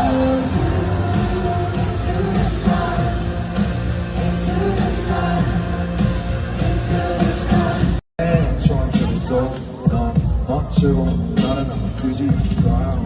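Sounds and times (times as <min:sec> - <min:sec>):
pop music with singing: 0:00.0 - 0:13.0.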